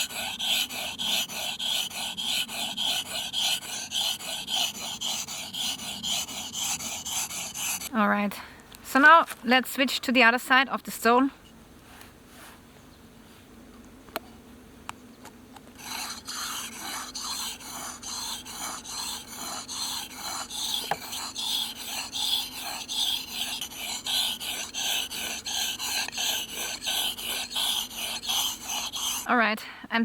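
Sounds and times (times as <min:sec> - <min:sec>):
knife scraping on sharpening stone: 0:15.8 - 0:29.3.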